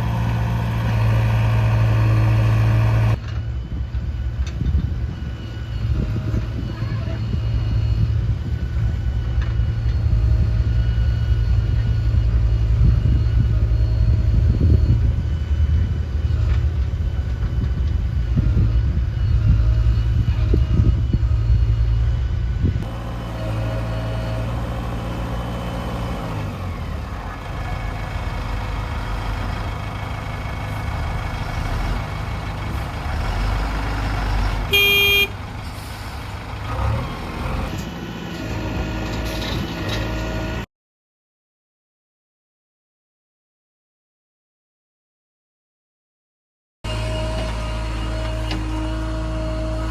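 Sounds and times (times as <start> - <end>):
diesel engine running loudly: 0.0 - 40.6, 46.9 - 49.9
vehicle horn toot: 34.7 - 35.4.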